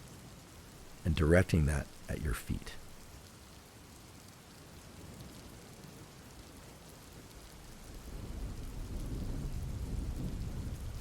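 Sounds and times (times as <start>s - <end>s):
steady rain falling: 0.0s - 11.0s
low rumble of thunder: 7.7s - 11.0s.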